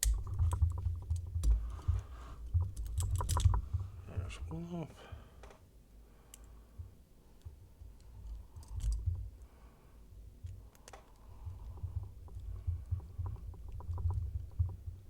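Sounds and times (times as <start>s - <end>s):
small metallic clicks of lock picking: 0.0s - 1.7s, 2.6s - 3.6s, 6.3s - 6.6s, 7.4s - 9.5s, 10.4s - 11.3s
low handling bumps: 11.5s - 15.0s.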